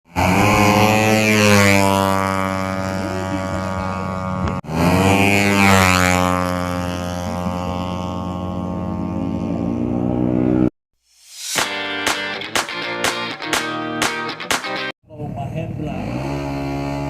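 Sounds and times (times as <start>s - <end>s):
motorcycle engine droning: 0.1s - 10.7s, 15.1s - 17.0s
motorcycle whooshing past: 0.1s - 11.8s, 16.0s - 17.0s.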